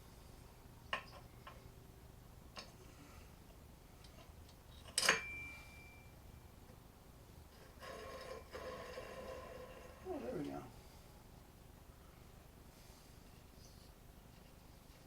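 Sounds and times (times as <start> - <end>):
metallic clink: 4.8 - 6.1.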